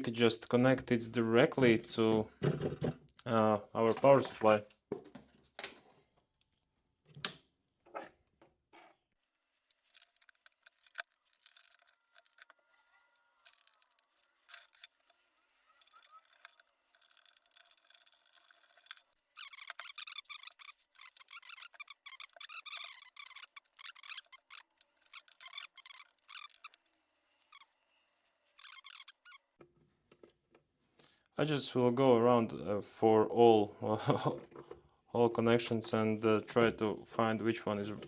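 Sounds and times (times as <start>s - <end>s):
clicks and rustles from wiring: 8.7s - 26.9s
rapid crackling: 13.4s - 27.7s.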